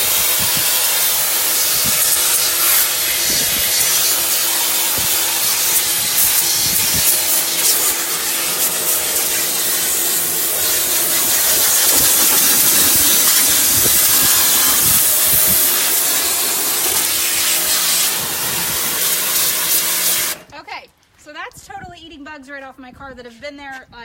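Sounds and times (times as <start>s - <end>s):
pressure washer spray hissing: 0.0s - 20.5s
machine humming: 0.8s - 19.3s.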